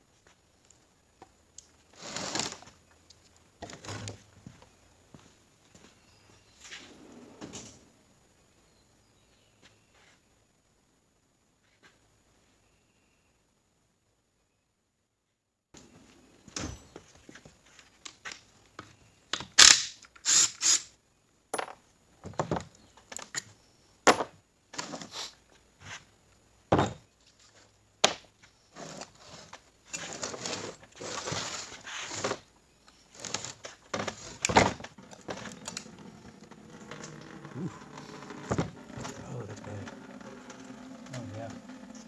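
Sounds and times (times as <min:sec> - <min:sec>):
metal parts and tools knocking: 0:21.6 - 0:21.8.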